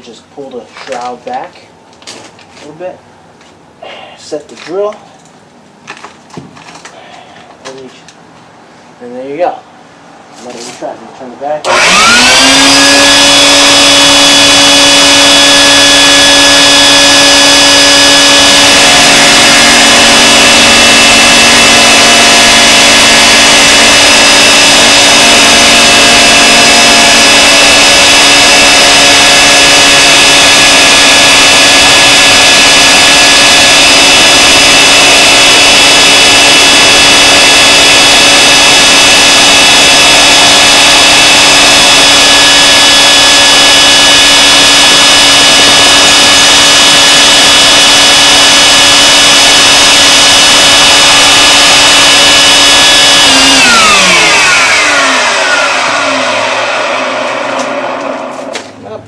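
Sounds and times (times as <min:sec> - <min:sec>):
lower motor note: 0:11.7 - 0:58.8
vacuum cleaner motor whine: 0:11.7 - 0:58.8.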